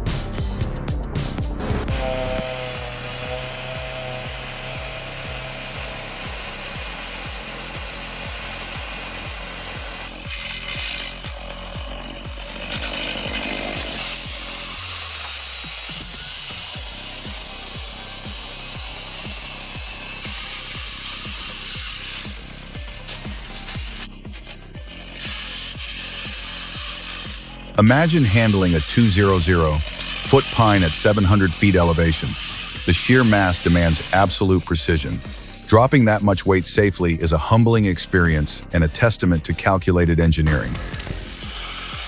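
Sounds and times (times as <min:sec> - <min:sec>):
background music with beat: 0:00.0 - 0:42.0
chainsaw cutting wood: 0:01.6 - 0:37.6, 0:40.4 - 0:42.0.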